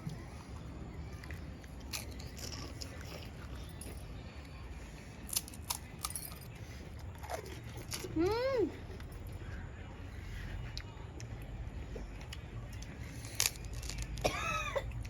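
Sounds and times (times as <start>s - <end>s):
low steady hum: 0.0s - 15.0s
crisp shells crunching: 13.2s - 14.3s.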